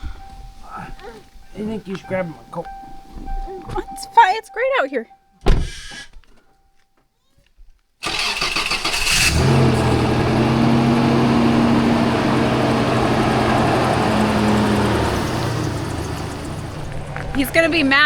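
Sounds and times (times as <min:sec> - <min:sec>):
truck engine cranking and idling: 0:08.0 - 0:18.0.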